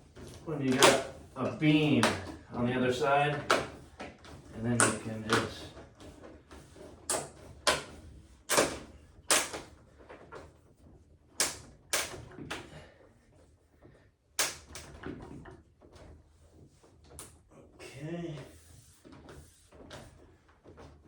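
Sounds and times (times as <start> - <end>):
panel knocking and snapping: 0.3 - 1.2, 7.1 - 9.6.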